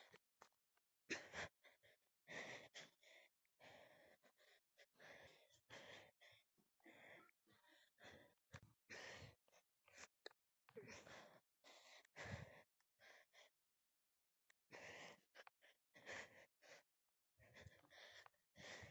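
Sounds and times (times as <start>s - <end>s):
person breathing heavily: 1.1s - 10.1s, 14.7s - 16.8s, 17.5s - 18.9s.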